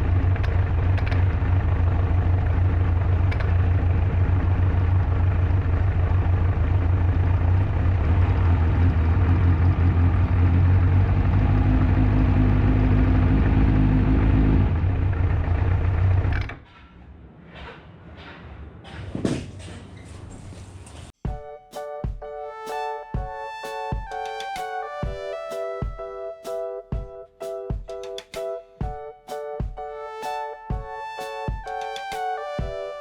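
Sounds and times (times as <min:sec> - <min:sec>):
motorcycle engine idling: 0:00.0 - 0:13.6, 0:14.7 - 0:16.6
engine rattle: 0:00.0 - 0:16.6.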